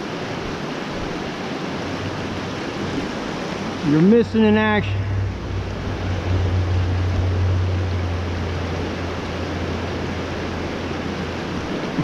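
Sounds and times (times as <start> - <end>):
stream rushing over rocks: 0.0 - 12.0
low rumble: 2.1 - 12.0.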